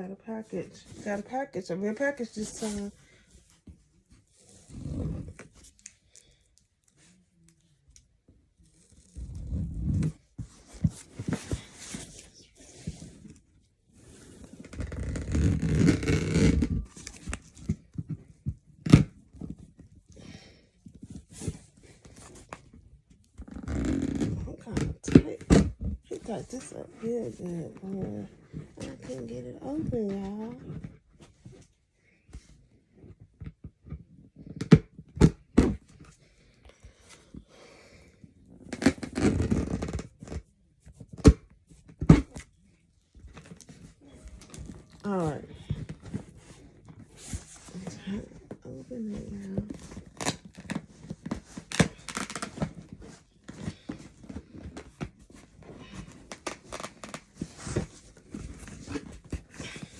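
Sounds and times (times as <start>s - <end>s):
wrapping tearing and rustling: 43.2s - 59.9s
package tearing and rustling: 49.8s - 52.9s.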